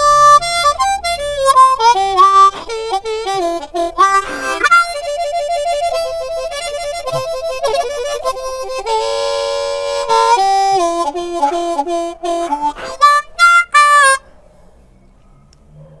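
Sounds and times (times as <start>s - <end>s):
harmonica melody: 0.0s - 14.2s.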